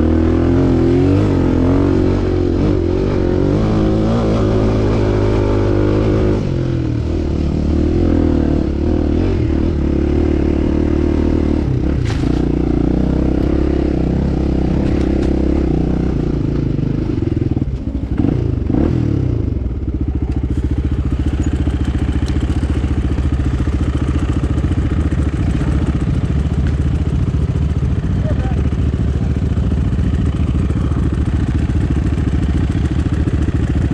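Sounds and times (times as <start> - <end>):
motorcycle engine revving: 0.0 - 33.9.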